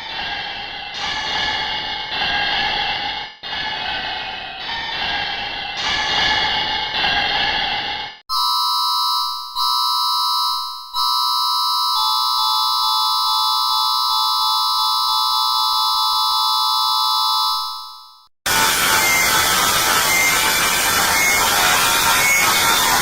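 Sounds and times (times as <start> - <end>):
electronic alarm tone: 8.3 - 18.3.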